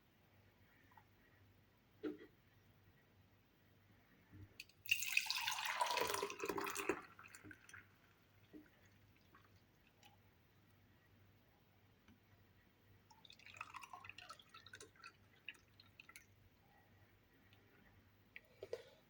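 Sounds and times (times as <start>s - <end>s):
liquid pouring: 4.6s - 10.0s, 13.2s - 16.4s.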